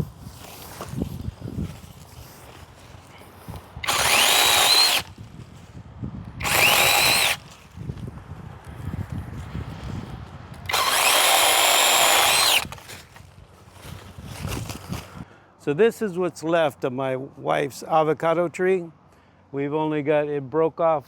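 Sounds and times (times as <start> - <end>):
chainsaw motor whining: 3.8 - 5.3, 6.4 - 7.5, 10.7 - 12.9.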